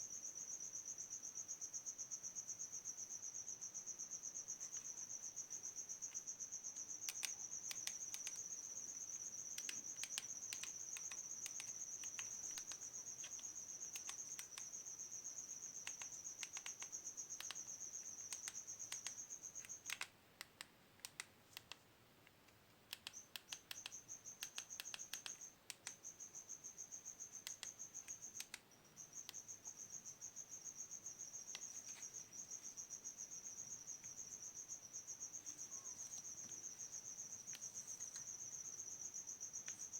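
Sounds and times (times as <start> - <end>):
cricket chirping: 0.0 - 39.9
sharp clicks and taps: 7.0 - 8.4.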